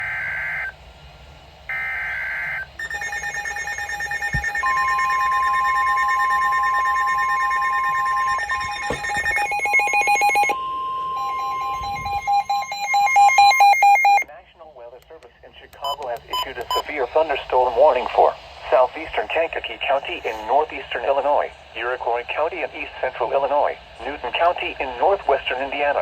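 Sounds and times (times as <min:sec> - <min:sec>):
warbling data tones: 0:01.7 - 0:14.2
electronic alarm beeping: 0:01.7 - 0:14.3, 0:15.8 - 0:16.9
steady long alert tone: 0:01.7 - 0:14.3.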